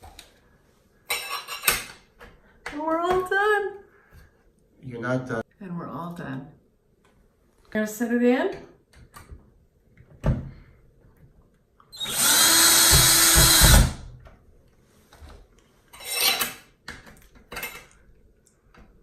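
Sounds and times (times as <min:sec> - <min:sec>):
power drill driving a screw: 0:12.0 - 0:14.0.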